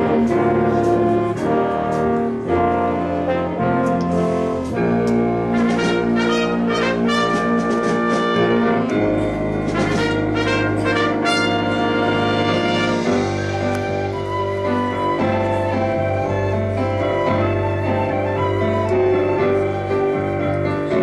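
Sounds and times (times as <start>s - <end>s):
brass playing a hymn: 0.0s - 21.0s
percussion strikes: 3.8s - 15.0s.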